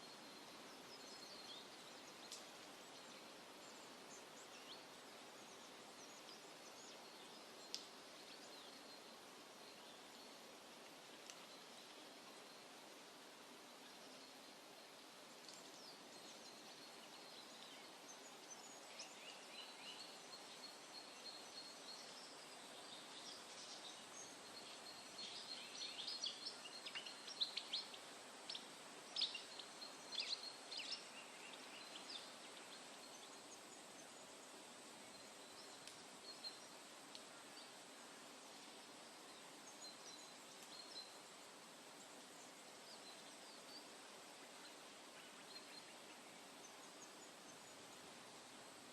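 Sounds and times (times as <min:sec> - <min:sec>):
faint background hiss: 0:00.0 - 0:48.9.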